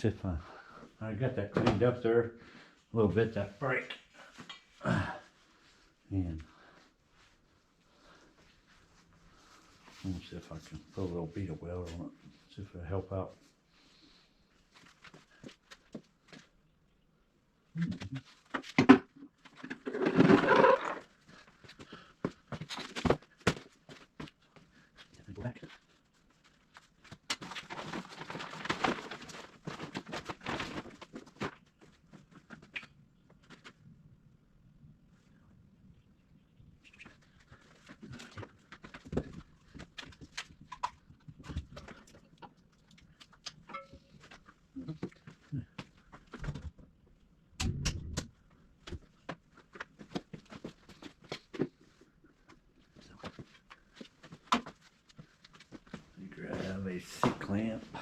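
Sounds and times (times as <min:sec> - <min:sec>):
knocks and clatter of handling: 0:25.6 - 0:33.8, 0:37.5 - 0:47.0.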